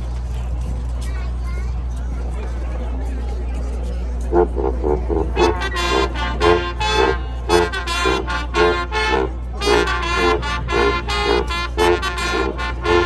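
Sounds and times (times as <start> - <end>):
low hum: 2.1 - 13.0
marching band brass playing: 4.3 - 13.0.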